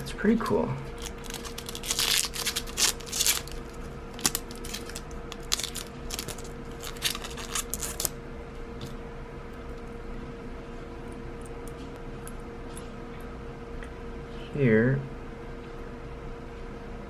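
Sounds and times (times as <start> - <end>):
packaging rustling: 0.9 - 8.2.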